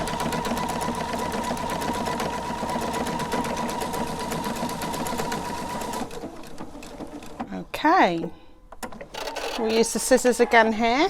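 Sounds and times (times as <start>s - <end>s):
sewing machine motor whine: 0.0s - 7.4s.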